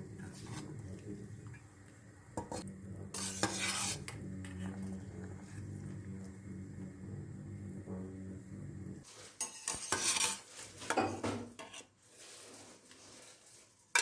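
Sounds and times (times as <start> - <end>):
steady low hum: 0.0 - 9.0
utensils clinking and scraping dishes: 2.4 - 4.8, 9.3 - 12.6.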